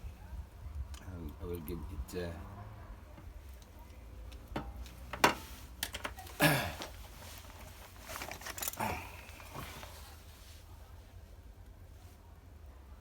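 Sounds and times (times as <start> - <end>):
rustles and scrapes: 3.2 - 11.4.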